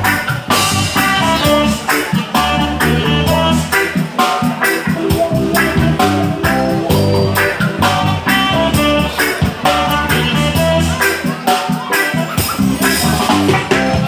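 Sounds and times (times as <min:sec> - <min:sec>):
bass guitar: 0:00.0 - 0:14.0
steady drum beat: 0:00.0 - 0:14.0
guitar chords: 0:02.6 - 0:11.0.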